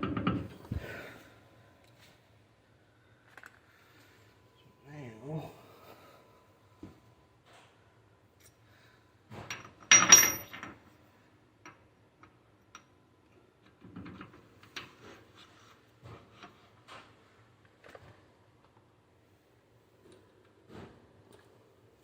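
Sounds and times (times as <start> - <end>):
metal tools clinking: 9.5 - 10.8.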